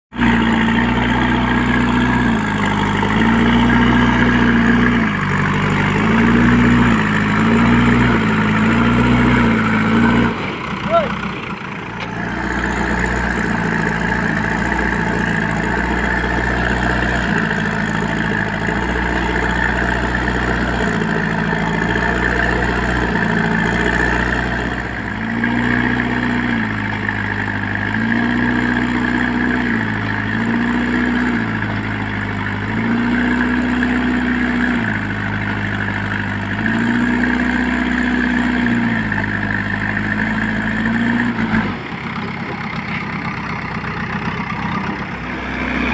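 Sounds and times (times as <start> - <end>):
diesel engine running: 0.1 - 45.9.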